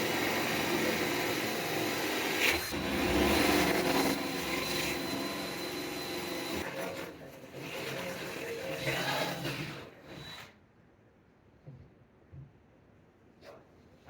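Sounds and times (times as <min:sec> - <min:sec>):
electric drill motor whine: 0:00.0 - 0:06.6, 0:08.7 - 0:10.5.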